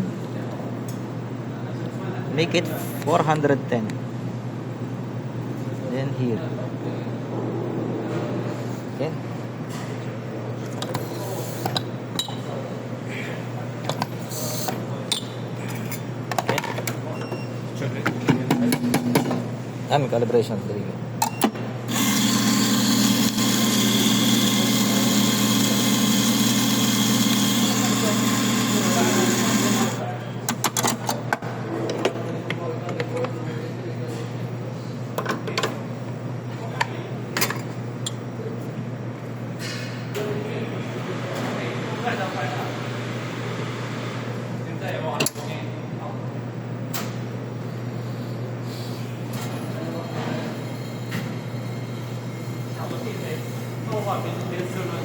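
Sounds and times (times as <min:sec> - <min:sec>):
espresso machine hum: 0:21.8 - 0:30.2.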